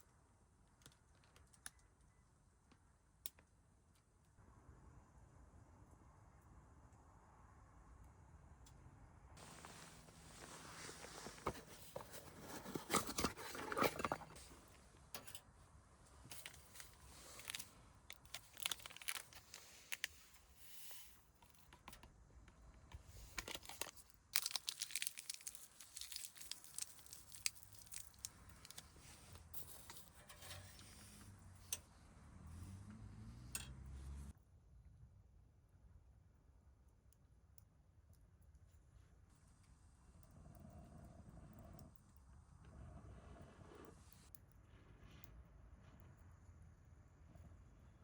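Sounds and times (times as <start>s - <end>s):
hands tearing and crinkling material: 16.3s - 20.2s, 23.2s - 29.3s.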